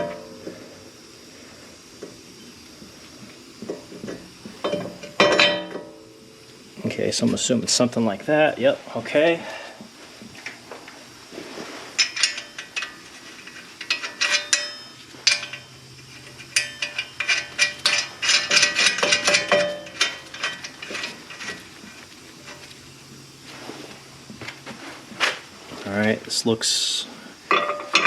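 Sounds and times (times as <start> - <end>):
metal tools clinking and rattling: 4.6 - 6.0, 12.0 - 22.7, 27.5 - 28.0.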